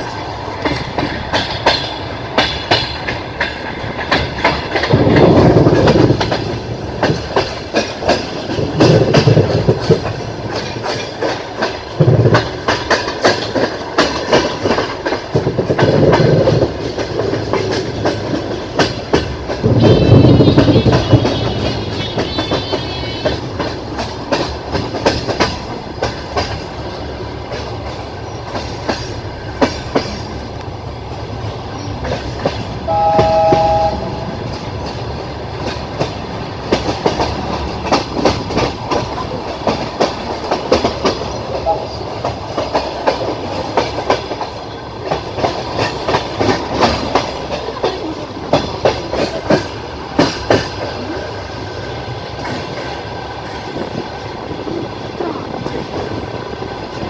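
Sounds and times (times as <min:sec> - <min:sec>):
train wheels clicking over rail joints: 0:00.0 - 0:57.0
two-tone train horn: 0:19.6 - 0:23.7, 0:32.9 - 0:34.6, 0:41.6 - 0:42.0.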